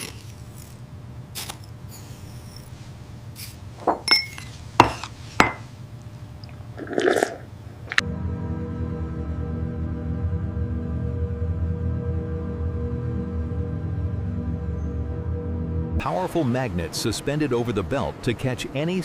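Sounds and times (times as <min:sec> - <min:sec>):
low steady hum: 0:00.0 - 0:19.0
glass clinks and taps: 0:03.8 - 0:05.6
background music: 0:08.0 - 0:19.0.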